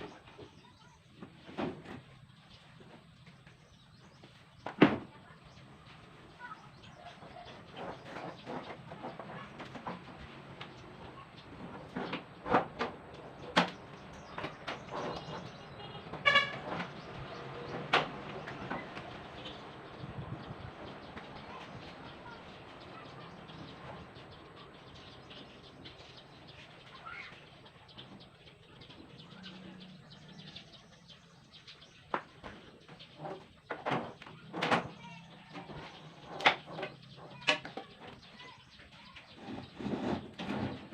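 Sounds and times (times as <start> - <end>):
birds calling: 1.9 - 40.9
sharp knocks and clatter: 7.3 - 19.5, 32.1 - 38.3.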